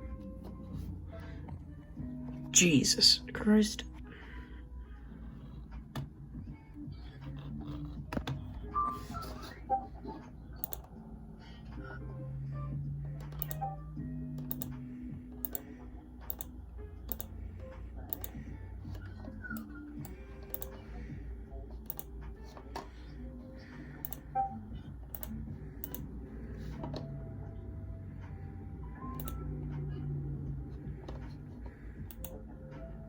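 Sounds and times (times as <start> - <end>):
steady low hum: 0.0 - 33.0
computer keyboard key clicks: 10.6 - 10.9, 13.2 - 13.7, 14.4 - 14.8, 15.4 - 17.3, 18.1 - 18.4, 19.6 - 20.8, 21.8 - 22.1, 24.0 - 24.3, 25.1 - 26.0, 29.2 - 29.4, 32.0 - 32.4.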